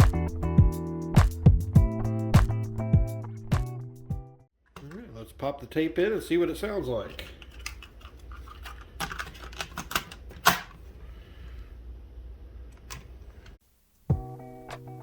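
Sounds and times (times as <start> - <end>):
music playing: 0.0 - 4.5, 14.1 - 15.0.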